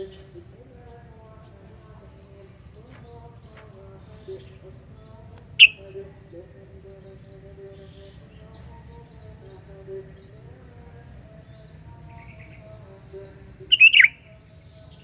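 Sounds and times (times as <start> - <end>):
high bird chirps: 5.5 - 5.9, 13.7 - 14.2
bird sharp call: 5.6 - 5.9, 13.7 - 14.2.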